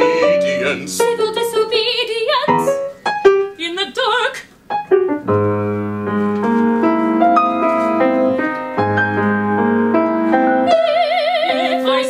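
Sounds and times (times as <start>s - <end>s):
person singing: 0.0s - 2.8s, 10.6s - 12.0s
solo piano run: 0.0s - 3.7s, 4.7s - 12.0s.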